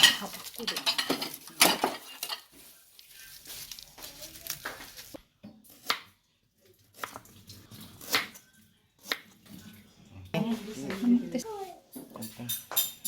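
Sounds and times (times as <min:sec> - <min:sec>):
spoons and dishes clinking: 0:00.0 - 0:02.7, 0:12.2 - 0:13.0.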